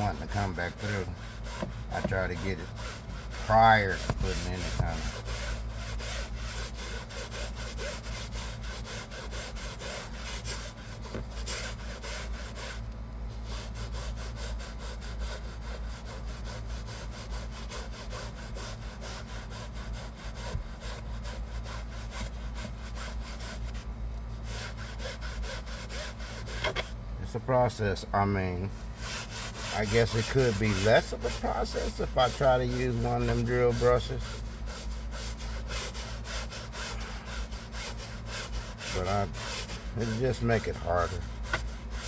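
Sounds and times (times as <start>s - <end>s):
brush scrubbing fabric upholstery: 0.0s - 8.1s, 29.0s - 36.2s, 36.9s - 41.8s.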